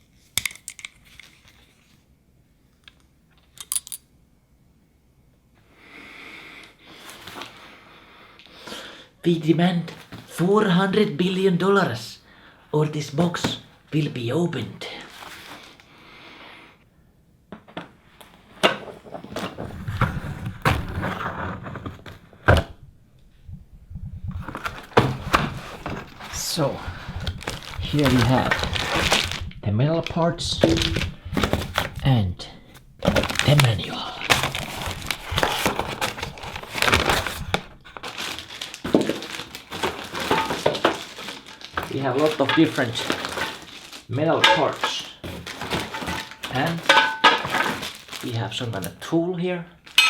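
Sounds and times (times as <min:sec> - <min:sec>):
cardboard box rustling and scraping: 0:18.8 - 0:22.8, 0:24.3 - 0:29.5, 0:30.2 - 0:44.1, 0:44.7 - 0:48.2.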